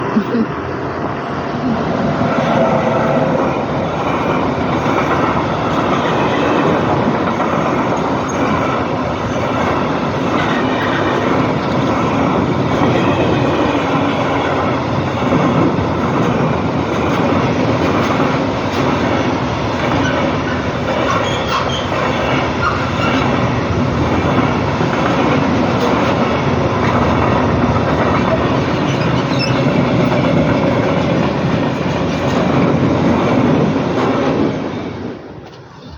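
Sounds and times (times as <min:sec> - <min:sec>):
train wheel clatter: 0:02.0 - 0:35.9.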